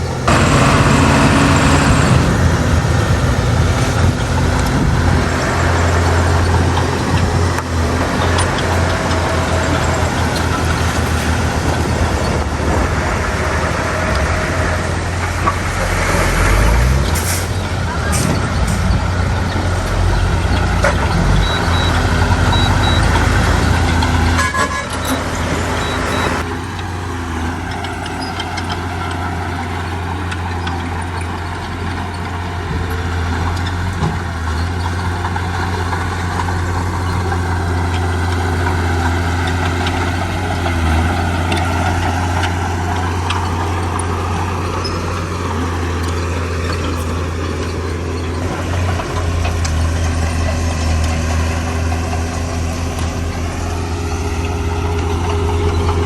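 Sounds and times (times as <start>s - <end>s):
loud rushing noise: 0.0s - 5.7s
diesel engines droning: 0.0s - 56.0s
short high beeps: 21.3s - 23.1s, 25.8s - 26.4s.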